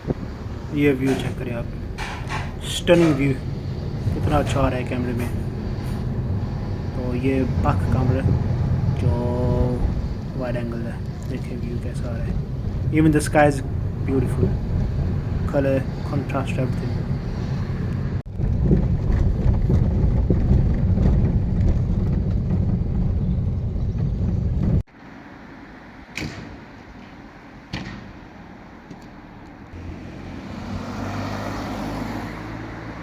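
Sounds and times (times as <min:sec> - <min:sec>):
loud low rumble: 0:00.0 - 0:24.8.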